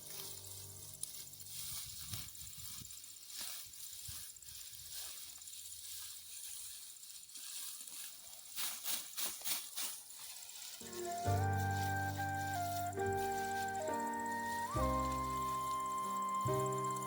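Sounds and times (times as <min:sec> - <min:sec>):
dry rustles: 0:00.0 - 0:17.0
soft outdoor hiss: 0:00.0 - 0:17.0
crickets chirping: 0:10.8 - 0:17.0.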